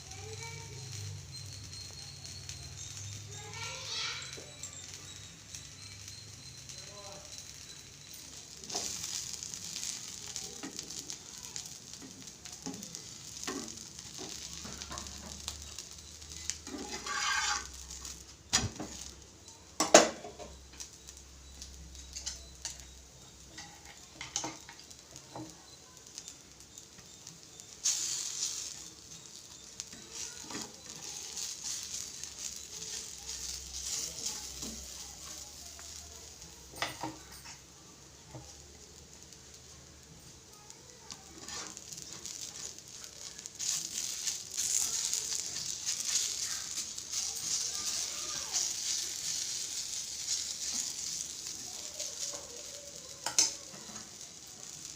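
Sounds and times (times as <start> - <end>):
pan sizzling: 0.0 - 54.9
spoon scraping and knocking pan: 11.9 - 19.1, 27.8 - 37.7, 41.2 - 42.8, 43.6 - 48.0, 48.6 - 51.5, 52.1 - 54.8.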